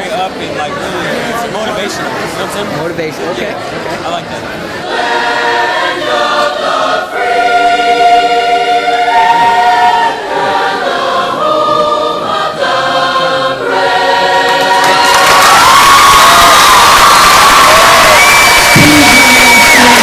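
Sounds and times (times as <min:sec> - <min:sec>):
choir singing held chords: 0:04.8 - 0:20.0.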